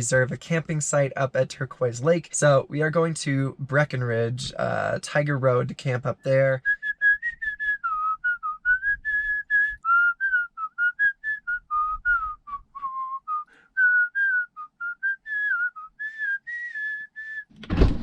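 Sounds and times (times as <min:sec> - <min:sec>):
person whistling a tune: 0:06.6 - 0:17.5.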